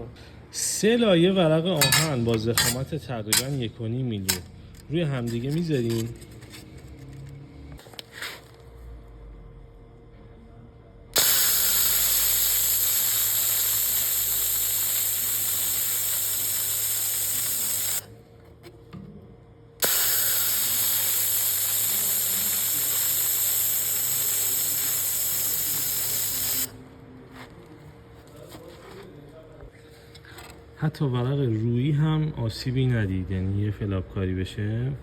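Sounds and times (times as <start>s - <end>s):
faint low machine hum: 0.0s - 13.1s, 16.0s - 19.8s, 20.5s - 35.0s
laser welder hissing: 11.2s - 18.1s, 19.8s - 26.8s.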